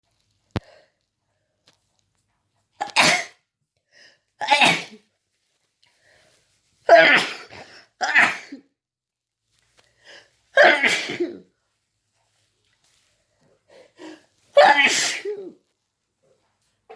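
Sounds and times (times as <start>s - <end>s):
person sneezing: 2.8s - 3.4s, 4.4s - 5.0s, 6.9s - 8.6s, 10.6s - 11.4s, 14.0s - 15.6s.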